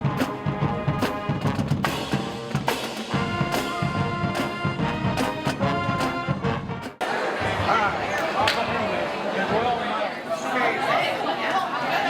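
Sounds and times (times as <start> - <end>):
music with drum beat: 0.0 - 7.0.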